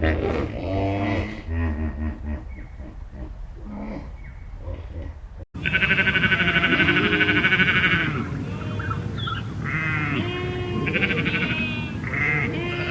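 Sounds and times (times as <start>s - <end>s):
animal bleating: 5.6s - 12.9s.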